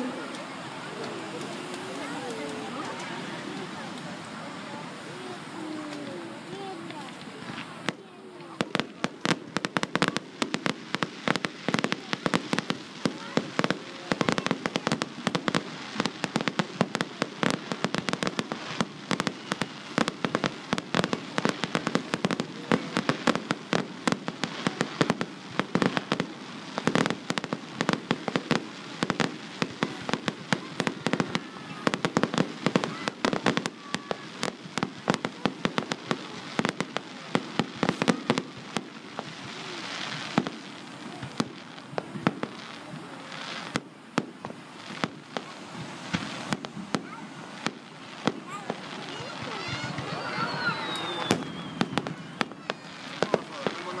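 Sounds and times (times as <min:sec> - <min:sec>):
fireworks bangs: 0:00.0 - 0:54.0
fireworks crackle: 0:00.0 - 0:54.0.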